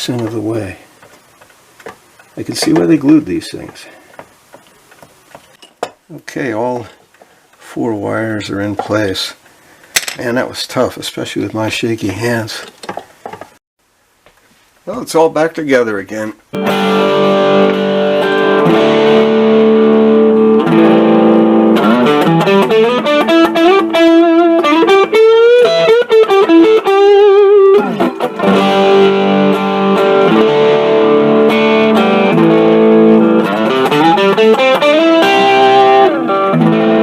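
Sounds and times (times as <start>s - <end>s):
electric guitar through small amp: 16.6s - 37.0s.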